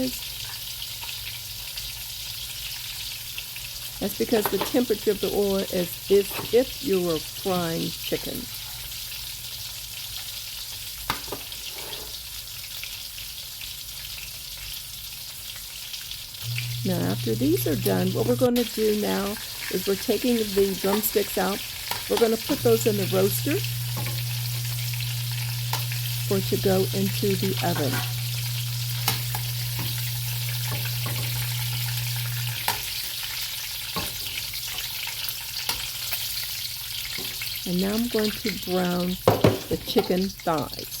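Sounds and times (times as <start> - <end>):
chicken sizzling in oil: 0.0 - 41.0
low steady hum: 16.4 - 32.7.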